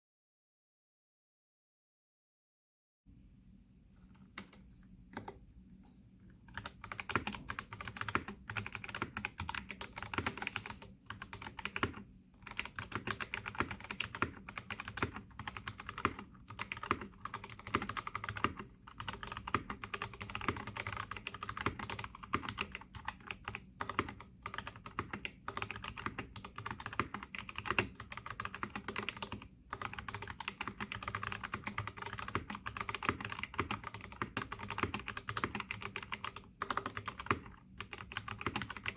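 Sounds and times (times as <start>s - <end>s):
typing on mechanical keyboard: 6.5s - 38.9s.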